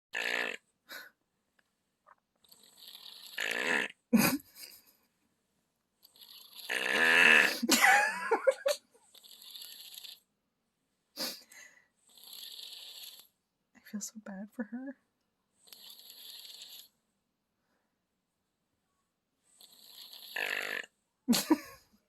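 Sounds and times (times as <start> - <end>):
child snoring: 0.2 - 1.1, 2.6 - 4.0, 6.2 - 7.7, 9.1 - 10.2, 12.1 - 13.3, 15.7 - 16.9, 19.6 - 20.9.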